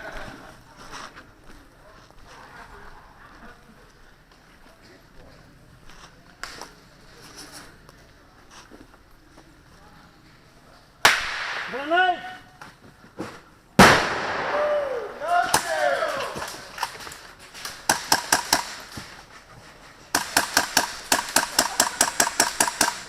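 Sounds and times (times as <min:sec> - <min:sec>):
people shouting: 0:14.5 - 0:16.7
airsoft guns firing bursts: 0:17.7 - 0:19.0, 0:20.1 - 0:23.0.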